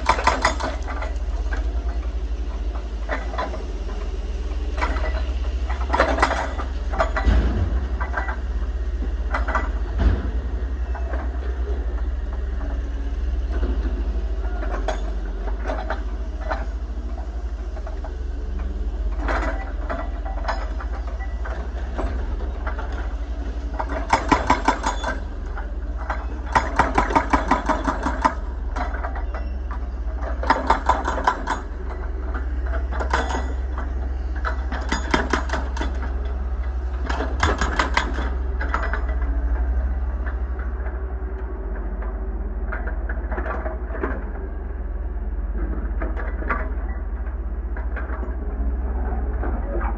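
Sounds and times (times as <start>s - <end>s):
metallic knocks and clanks: 0.0s - 2.0s, 4.7s - 12.8s, 19.1s - 41.0s
diesel engine running: 0.0s - 49.9s.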